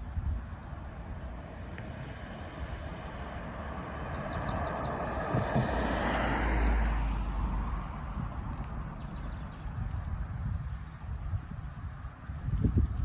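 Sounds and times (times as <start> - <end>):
vehicle passing close by: 2.4 - 10.0.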